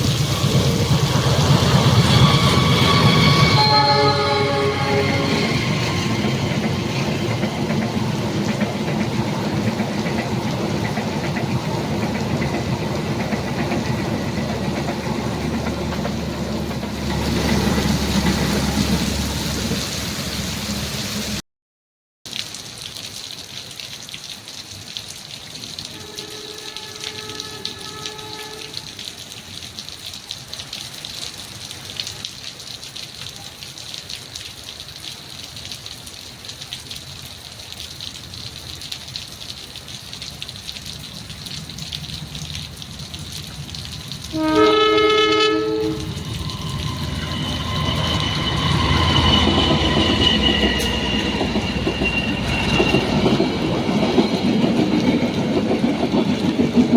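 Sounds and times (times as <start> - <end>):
train rumble: 0.0 - 21.4, 38.2 - 56.9
train horn: 1.8 - 7.3, 25.8 - 29.2, 43.4 - 53.8
heavy rain hissing: 4.4 - 21.4
high steady whine: 45.8 - 53.8.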